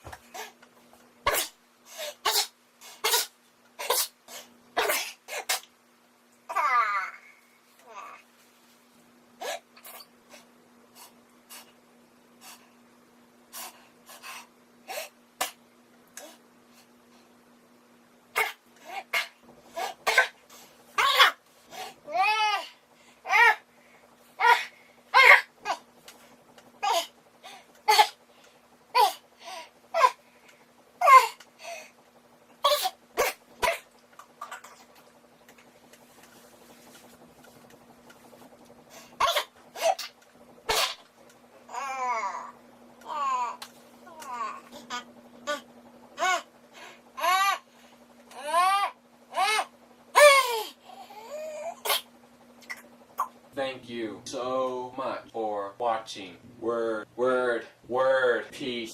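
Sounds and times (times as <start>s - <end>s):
man sneezing rapidly: 1.3s - 4.2s, 40.7s - 41.0s.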